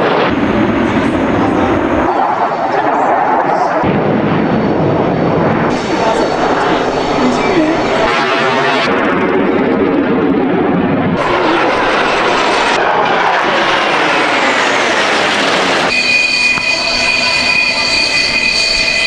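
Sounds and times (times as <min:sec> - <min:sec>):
jet engine noise: 0:00.0 - 0:19.0
high-pitched whine: 0:05.6 - 0:10.4, 0:14.1 - 0:19.0.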